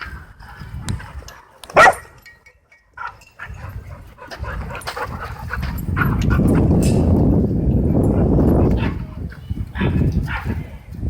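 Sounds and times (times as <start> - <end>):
dog barking: 1.7 - 2.1.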